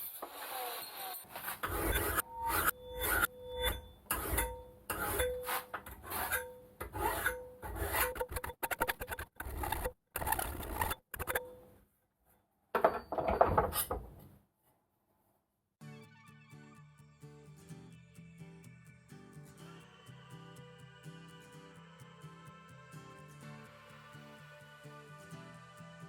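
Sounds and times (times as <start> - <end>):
hacksaw cutting steel: 0.0 - 11.5.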